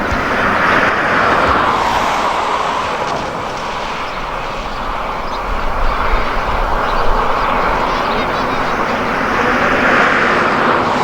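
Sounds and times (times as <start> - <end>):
highway traffic rushing: 0.0 - 11.0.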